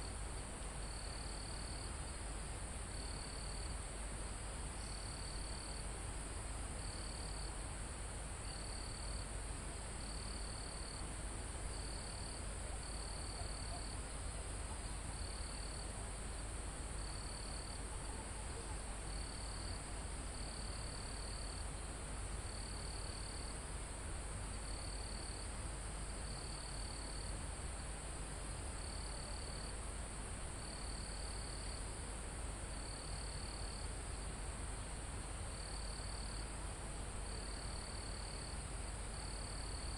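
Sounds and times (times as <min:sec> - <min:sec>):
insects buzzing drone: 0:00.0 - 0:39.9
cricket chirping trills: 0:00.8 - 0:02.3, 0:02.9 - 0:03.8, 0:04.8 - 0:05.9, 0:06.8 - 0:07.6, 0:08.4 - 0:09.3, 0:10.0 - 0:11.0, 0:11.7 - 0:23.6, 0:24.6 - 0:27.9, 0:28.5 - 0:29.8, 0:30.6 - 0:31.8, 0:32.8 - 0:34.4, 0:35.5 - 0:36.6, 0:37.2 - 0:39.9.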